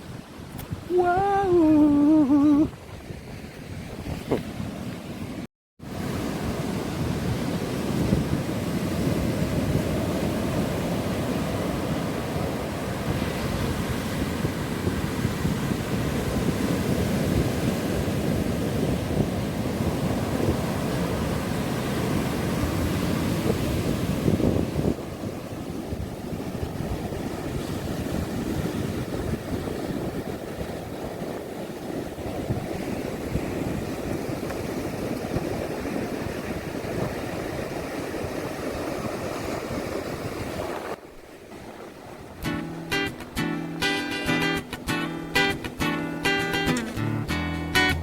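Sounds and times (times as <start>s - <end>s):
wind buffeting microphone: 0.0s - 42.7s
ocean surf breaking on beach: 0.0s - 46.8s.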